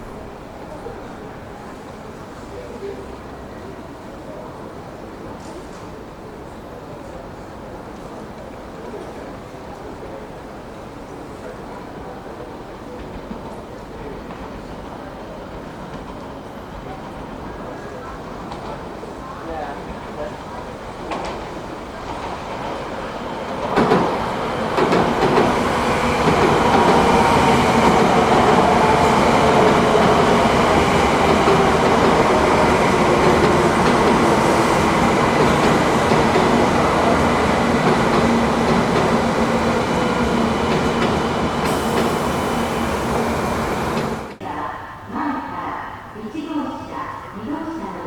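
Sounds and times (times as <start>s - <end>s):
train passing at speed: 0.0s - 44.5s
train whine: 21.0s - 44.4s.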